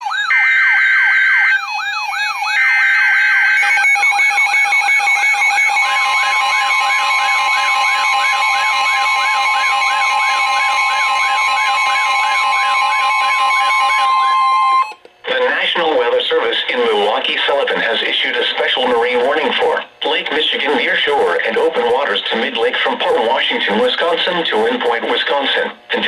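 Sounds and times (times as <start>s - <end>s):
siren yelp: 0.0s - 16.1s.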